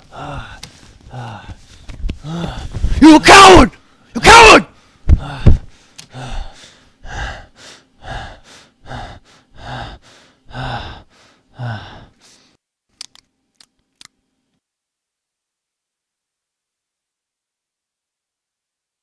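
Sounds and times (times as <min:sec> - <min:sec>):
person gasping breaths: 0:00.0 - 0:03.0, 0:04.7 - 0:12.6.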